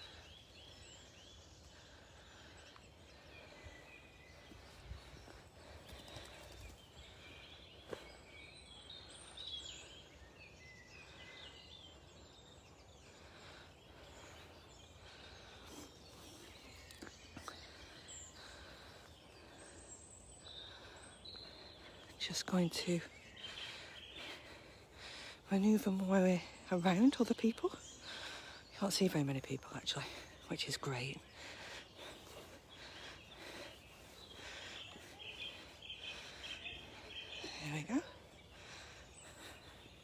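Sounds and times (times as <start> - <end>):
songbirds chirping: 0.0 - 40.0.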